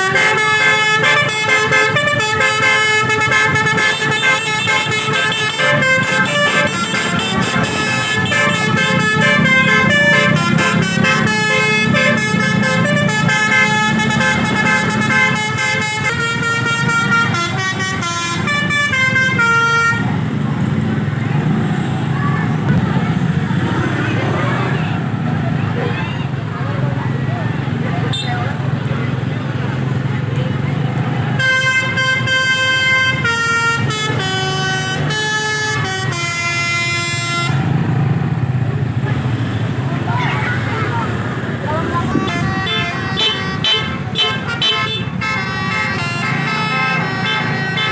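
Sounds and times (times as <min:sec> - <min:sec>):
musical bus horn tune: 0:00.0 - 0:20.3, 0:30.7 - 0:38.1, 0:41.1 - 0:47.9.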